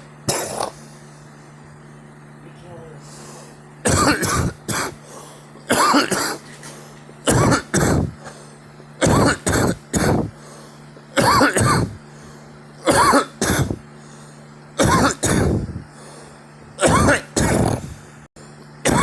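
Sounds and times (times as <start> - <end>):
person coughing: 0.3 - 0.8, 3.8 - 5.0, 5.7 - 6.5, 7.2 - 8.3, 9.0 - 10.4, 11.2 - 12.0, 12.8 - 13.8, 14.8 - 15.8, 16.8 - 18.0.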